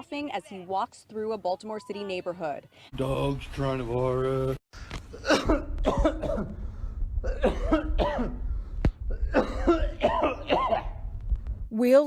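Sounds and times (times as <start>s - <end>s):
steady low rumble: 3.0s - 11.8s
man coughing: 5.1s - 6.6s, 7.2s - 8.4s, 9.1s - 11.0s.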